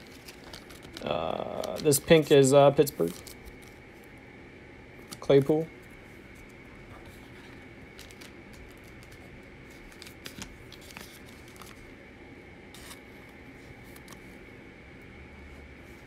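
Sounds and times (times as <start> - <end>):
trading cards clicking and scraping: 0.0 - 2.2, 2.8 - 3.8, 6.3 - 11.9, 12.7 - 14.3.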